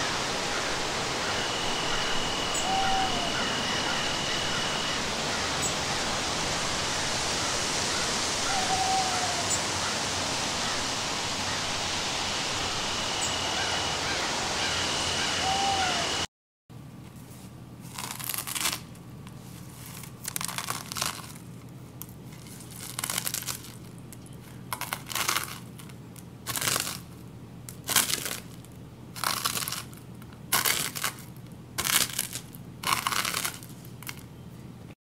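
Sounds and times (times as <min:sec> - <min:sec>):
steady low hum: 0:00.0 - 0:35.0
short crunching noises: 0:17.8 - 0:34.3.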